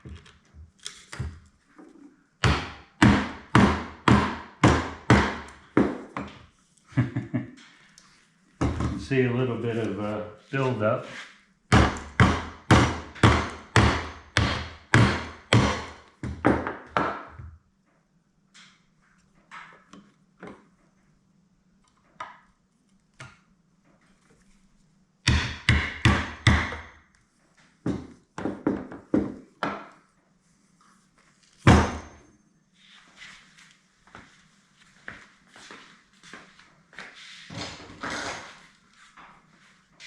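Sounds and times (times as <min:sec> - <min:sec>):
knocks on metal parts: 0:11.7 - 0:17.4, 0:25.2 - 0:27.0.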